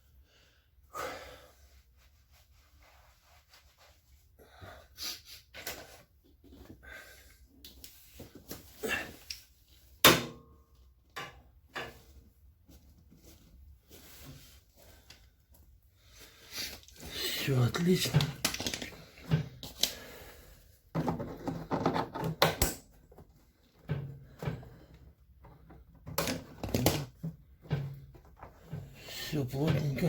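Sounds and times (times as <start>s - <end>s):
hands handling machine parts: 17.8s - 20.0s.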